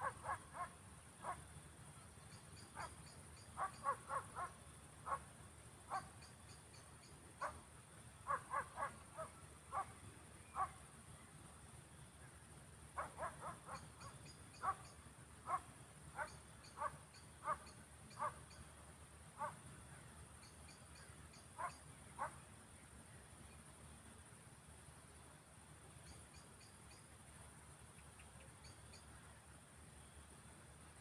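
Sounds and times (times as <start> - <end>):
deer barking: 0.0 - 1.4, 3.6 - 5.2, 8.3 - 9.9, 13.0 - 14.9, 15.5 - 18.4
high insect drone: 0.0 - 31.0.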